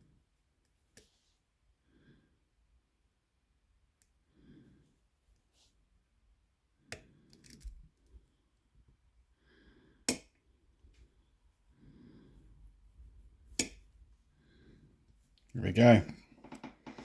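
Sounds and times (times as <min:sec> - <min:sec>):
soft breathing: 0:04.3 - 0:05.8, 0:09.3 - 0:10.1, 0:11.0 - 0:13.2, 0:14.2 - 0:15.4.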